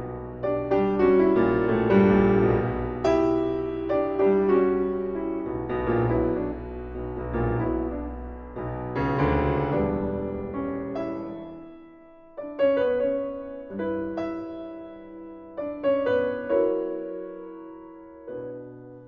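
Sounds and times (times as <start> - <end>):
piano chords ringing: 0.0 - 19.0.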